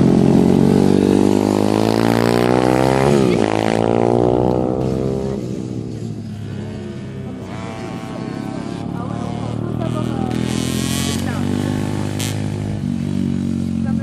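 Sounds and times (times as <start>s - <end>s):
small motorbike engine accelerating: 0.0s - 14.0s.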